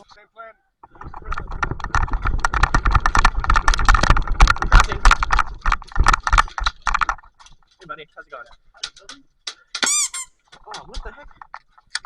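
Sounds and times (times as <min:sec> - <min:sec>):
low thumps: 0:00.8 - 0:07.6
clicks and knocks: 0:00.8 - 0:07.8, 0:08.5 - 0:12.0.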